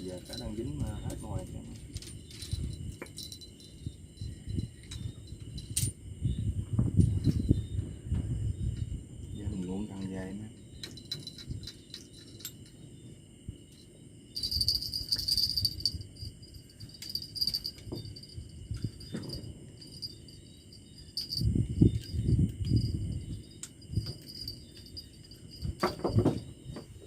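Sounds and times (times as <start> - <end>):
crickets chirping: 0.0 - 27.0
pulsing insect chirp: 0.0 - 27.0
low thumps and knocks: 6.6 - 9.2, 17.1 - 20.1, 23.9 - 27.0.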